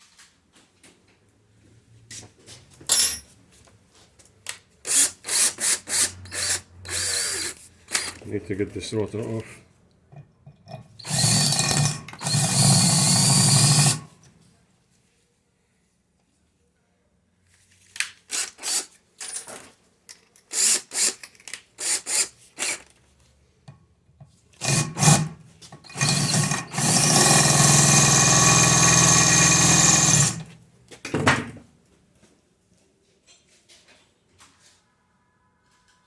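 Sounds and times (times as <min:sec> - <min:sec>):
electric drill drilling: 0:04.9 - 0:08.2, 0:11.0 - 0:14.1, 0:24.6 - 0:30.5.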